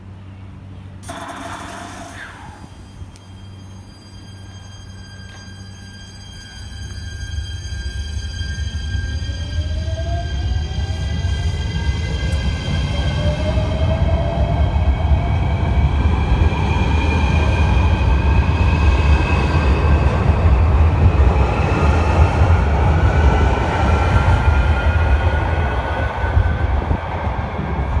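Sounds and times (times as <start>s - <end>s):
electric train whine rising: 1.0s - 28.0s.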